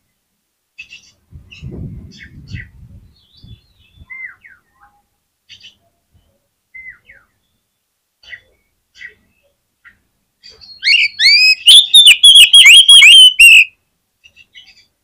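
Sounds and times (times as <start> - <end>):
bird singing whistles and chatter: 10.6 - 13.7.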